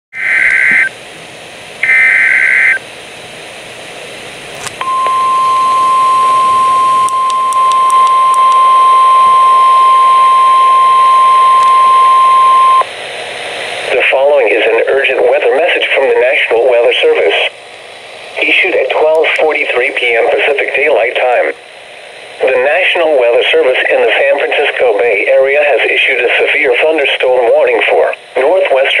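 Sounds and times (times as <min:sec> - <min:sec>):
two-tone data screech: 0:00.2 - 0:00.9, 0:01.8 - 0:02.8
steady warning alarm tone: 0:01.8 - 0:02.8, 0:04.8 - 0:12.9.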